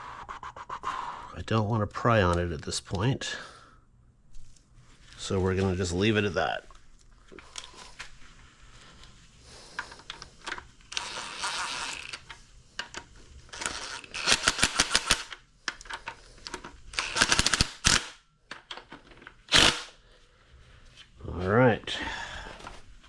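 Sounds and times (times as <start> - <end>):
ratchet wrench clicking: 10.9 - 12.2, 13.6 - 15.4, 17.0 - 18.2.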